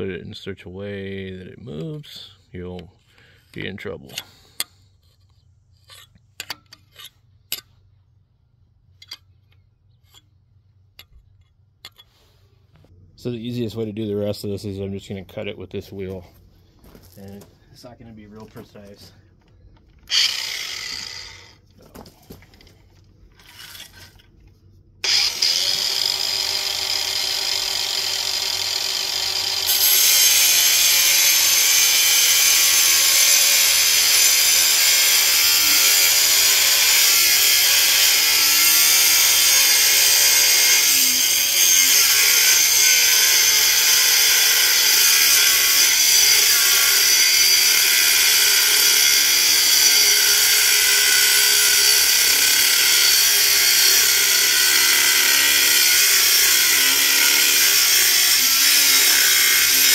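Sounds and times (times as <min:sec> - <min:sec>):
cut-off wheel grinding metal: 0:20.1 - 0:21.6, 0:25.0 - 0:59.9.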